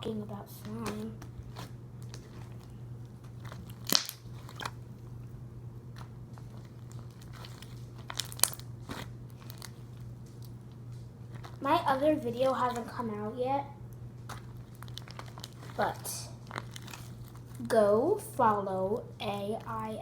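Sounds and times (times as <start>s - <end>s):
steady low hum: 0.0s - 20.0s
slime squished by hand: 0.5s - 13.1s, 14.0s - 17.7s
crackling clicks of slime: 0.6s - 11.6s, 13.9s - 17.7s
sharp slime pops: 3.6s - 4.8s.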